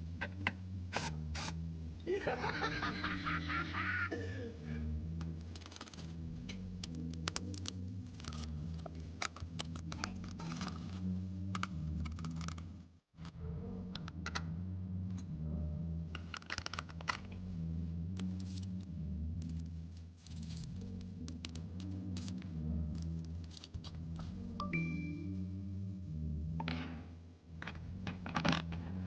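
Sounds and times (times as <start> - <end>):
low hum: 0.0 - 29.0
computer parts clicking and scraping: 16.2 - 17.4.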